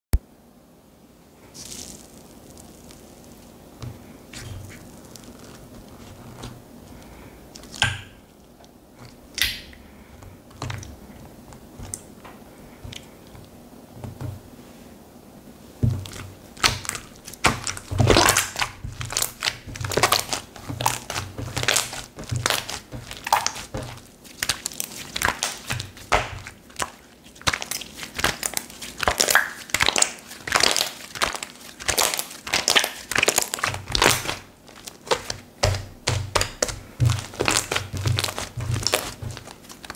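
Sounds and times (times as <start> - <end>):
slime crackling and popping: 1.4 - 6.6, 15.8 - 39.9.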